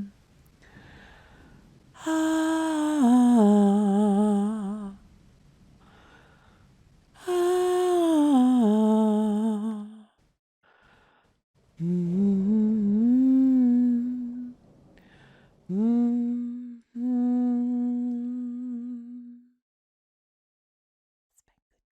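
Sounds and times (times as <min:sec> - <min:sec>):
woman humming a lullaby: 0:02.0 - 0:05.0, 0:07.2 - 0:10.0, 0:11.8 - 0:14.6, 0:15.7 - 0:19.5.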